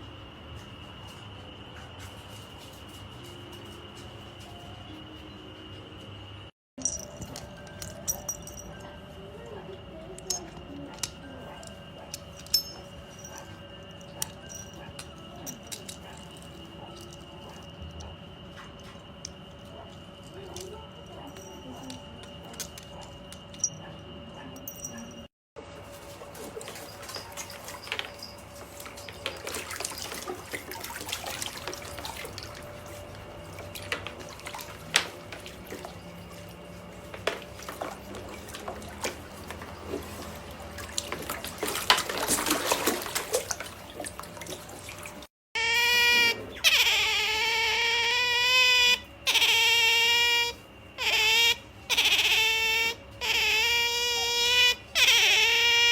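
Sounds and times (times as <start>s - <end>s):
water splashing: 25.8s - 45.3s.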